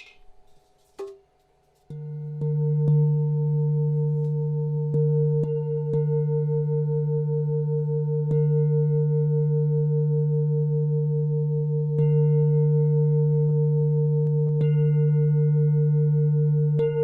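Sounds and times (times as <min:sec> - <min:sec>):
bowl struck with bright ring: 0:00.0 - 0:17.0.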